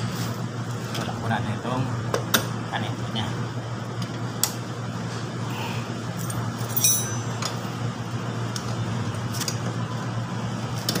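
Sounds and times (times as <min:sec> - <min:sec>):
steady low hum: 0:00.0 - 0:10.9
ringing metal clink: 0:06.7 - 0:07.6.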